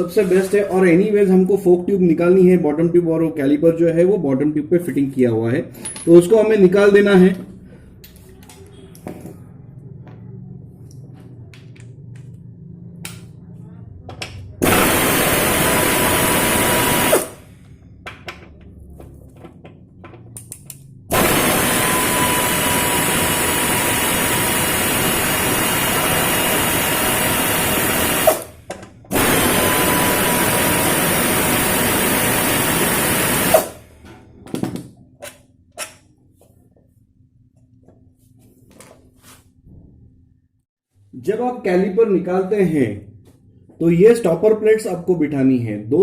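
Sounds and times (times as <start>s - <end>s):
power tool undoing bolts: 14.6s - 17.4s, 21.1s - 33.8s.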